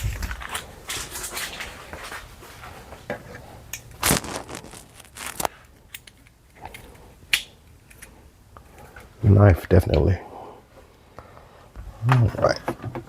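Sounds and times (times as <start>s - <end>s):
items rustling and scraping: 0.0s - 7.1s.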